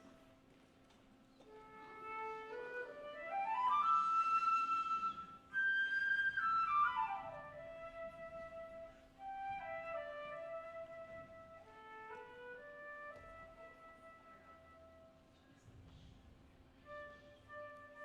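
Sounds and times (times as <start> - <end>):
flute playing: 1.5 - 15.2, 16.8 - 18.0.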